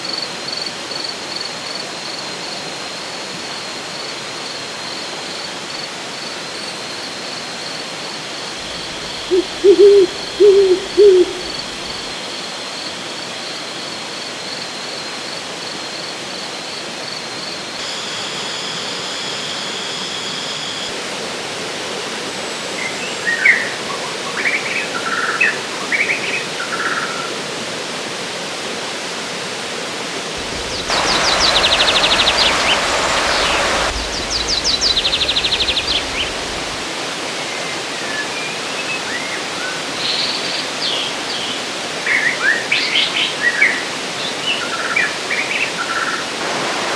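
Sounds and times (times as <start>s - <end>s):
birds chirping and trilling: 8.6s - 12.1s, 30.4s - 36.8s
river rushing: 8.6s - 12.2s, 30.4s - 37.5s, 46.2s - 46.9s.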